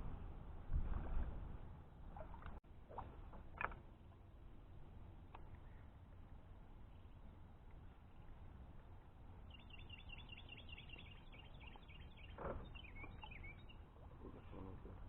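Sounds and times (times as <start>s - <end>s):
low wind rumble: 0.0s - 15.0s
songbird trilling: 9.5s - 14.6s.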